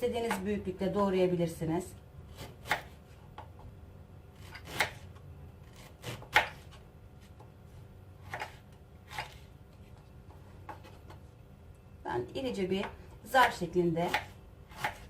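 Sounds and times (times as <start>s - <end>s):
knife cutting on cutting board: 2.3s - 3.1s, 8.2s - 9.4s, 14.1s - 15.0s.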